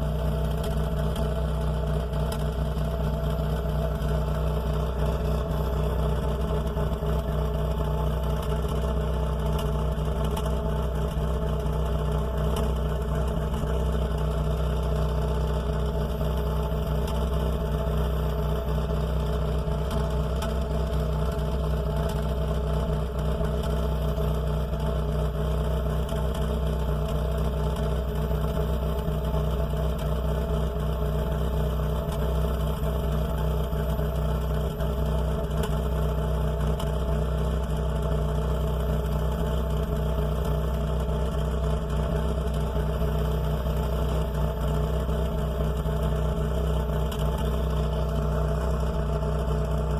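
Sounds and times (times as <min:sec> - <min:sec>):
car engine idling: 0:00.0 - 0:49.9
faint exhaust ticks: 0:08.3 - 0:14.0.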